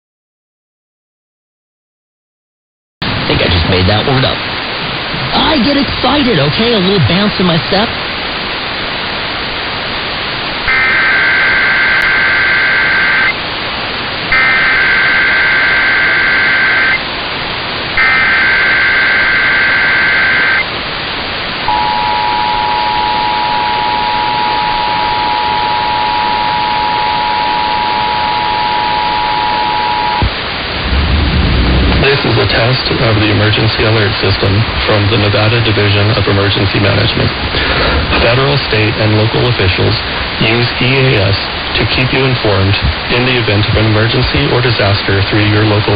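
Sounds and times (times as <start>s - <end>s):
radio hiss: 3.0s - 30.8s, 31.8s - 45.9s
two-tone attention signal: 10.7s - 13.4s, 14.3s - 17.0s, 18.0s - 20.6s, 21.7s - 30.3s
warbling digital data screech: 10.7s - 13.4s, 14.3s - 17.0s, 18.0s - 20.7s.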